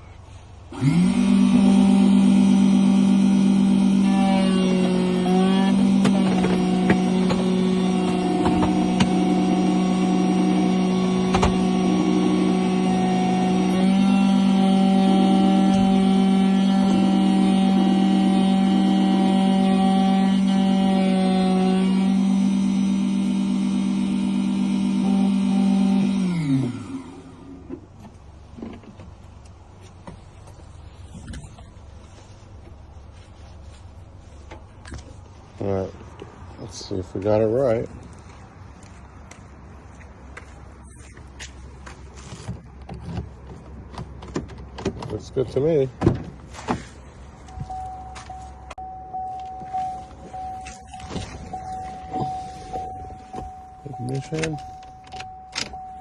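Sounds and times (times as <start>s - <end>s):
machine motor spinning down: 0.7s - 27.6s.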